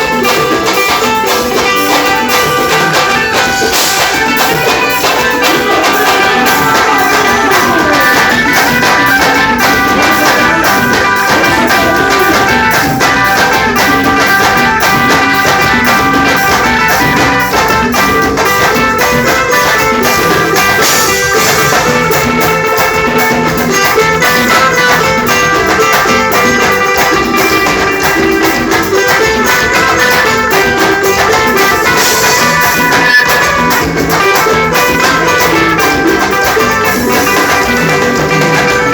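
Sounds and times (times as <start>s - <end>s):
fast percussion beat: 0.0s - 38.9s
folk ensemble melody: 0.0s - 38.9s.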